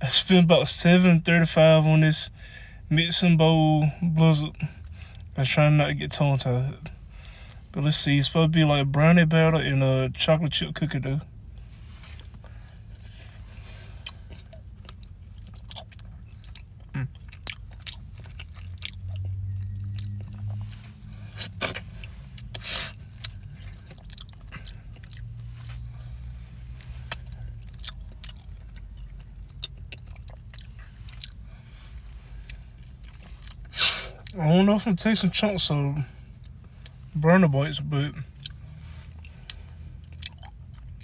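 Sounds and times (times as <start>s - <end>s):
low steady hum: 0.0s - 41.0s
chewing and mouth clicks: 13.2s - 34.4s, 38.3s - 41.0s.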